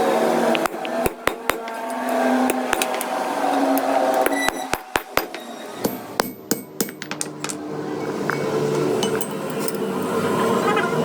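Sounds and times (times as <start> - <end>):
hand tools clicking on steel: 0.5 - 7.6.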